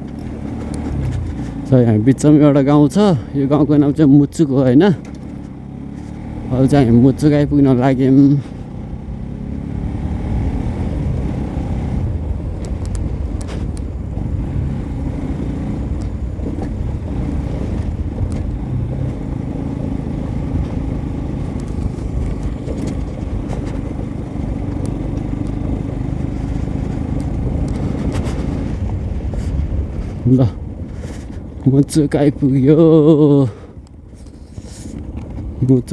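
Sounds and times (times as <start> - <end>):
motorcycle engine running: 0.0 - 35.9.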